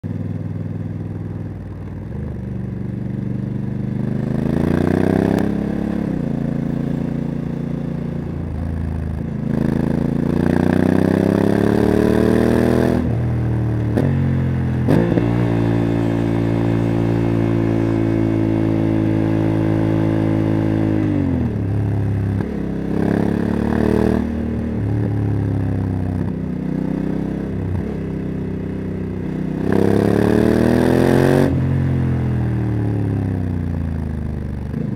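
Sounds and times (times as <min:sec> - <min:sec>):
motorcycle engine accelerating: 0:00.0 - 0:34.9.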